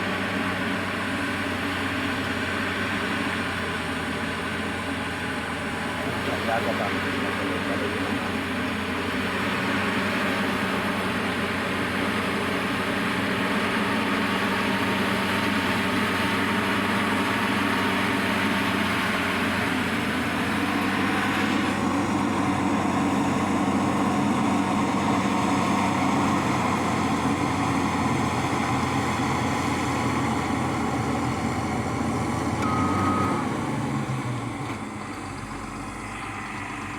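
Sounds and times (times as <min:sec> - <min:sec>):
diesel engine running hard: 0:00.0 - 0:36.9
short high beep: 0:32.6 - 0:33.6.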